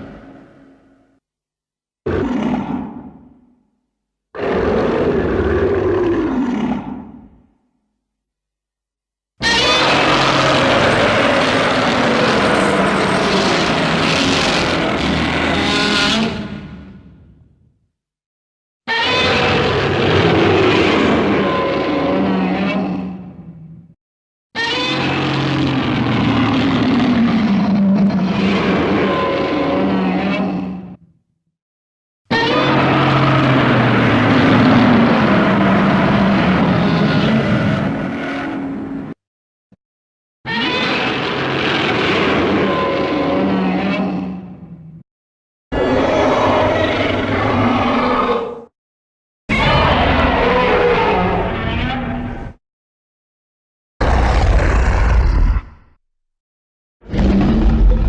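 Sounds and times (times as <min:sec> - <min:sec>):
harsh monster roar: 0:02.1 - 0:03.1, 0:04.4 - 0:07.2, 0:09.4 - 0:16.9, 0:19.0 - 0:23.2, 0:24.8 - 0:31.0, 0:32.3 - 0:39.1, 0:40.5 - 0:44.4, 0:45.7 - 0:48.7, 0:49.5 - 0:51.9, 0:54.0 - 0:56.0, 0:57.0 - 0:58.0.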